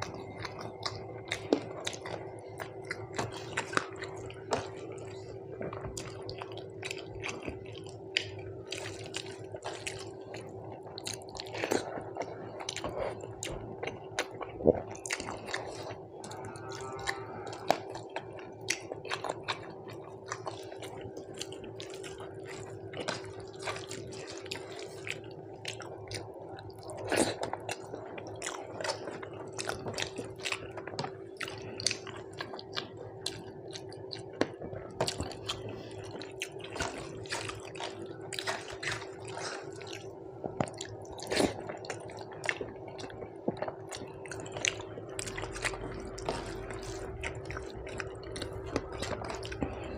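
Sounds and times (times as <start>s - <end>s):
low hum: 0.0s - 25.6s, 42.5s - 49.9s
wet chewing: 0.0s - 49.9s.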